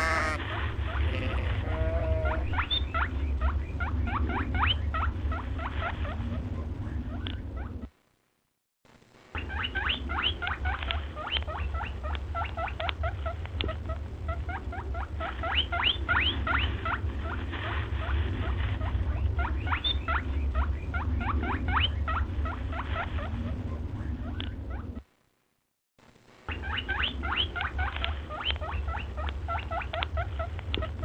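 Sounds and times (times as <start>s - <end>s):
small animals squeaking: 0.0s - 6.4s, 26.5s - 31.0s
steady low hum: 0.0s - 31.0s.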